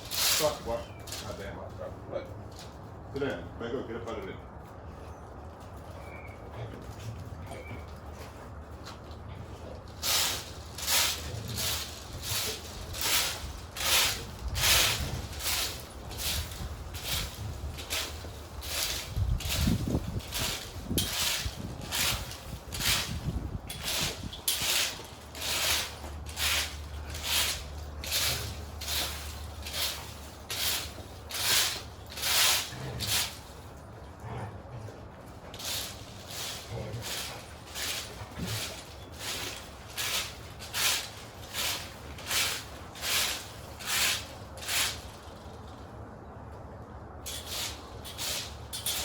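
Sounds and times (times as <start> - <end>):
broom sweeping ground: 0.0 - 1.4, 9.4 - 33.7, 35.3 - 45.8, 47.3 - 49.0.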